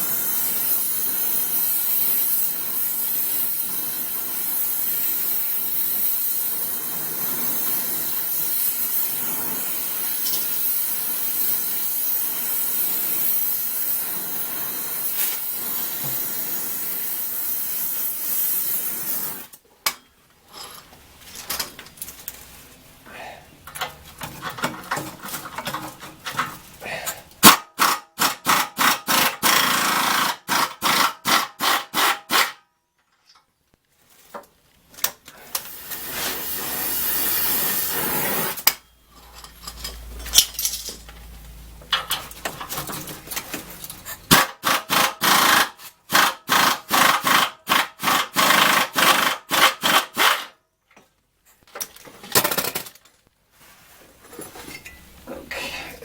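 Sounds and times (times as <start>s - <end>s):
steady hiss: 35.6s - 39.2s.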